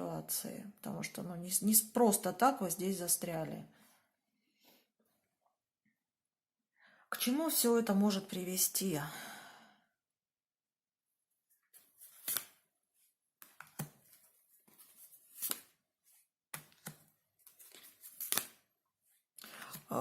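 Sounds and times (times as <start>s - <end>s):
cards shuffled by hand: 11.7s - 12.6s, 13.4s - 20.0s.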